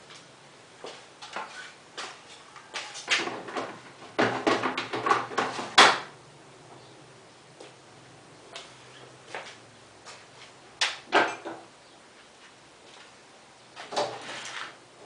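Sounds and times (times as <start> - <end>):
objects knocking and clattering: 3.1 - 6.1, 10.9 - 11.7.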